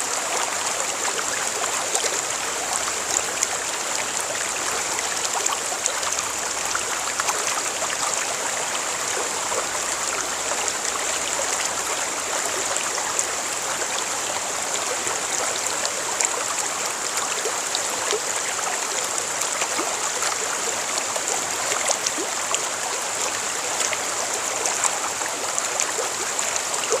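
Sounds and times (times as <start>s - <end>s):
small splashes and trickles: 0.0s - 27.0s
stream water babbling: 0.0s - 27.0s.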